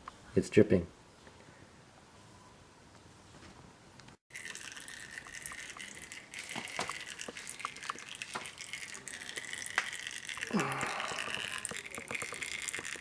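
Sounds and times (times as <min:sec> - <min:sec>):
oil dripping into plastic container: 0:04.3 - 0:13.0.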